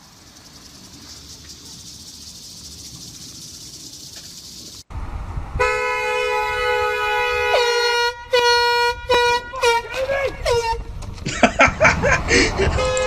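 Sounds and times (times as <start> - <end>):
steady outdoor hiss: 0.0 - 13.0
loud air horn blast: 5.6 - 10.9, 12.7 - 13.0.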